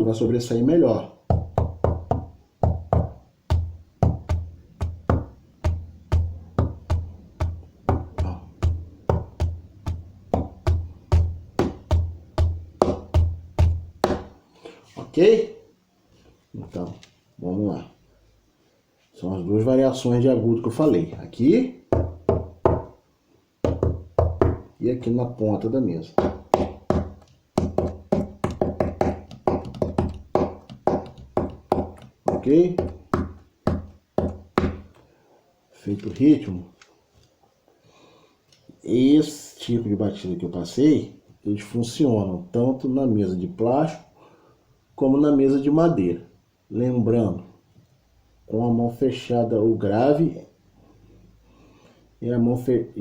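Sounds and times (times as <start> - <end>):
hand drumming on wooden table: 1.3 - 14.4, 21.9 - 23.0, 23.6 - 24.7, 26.2 - 35.0.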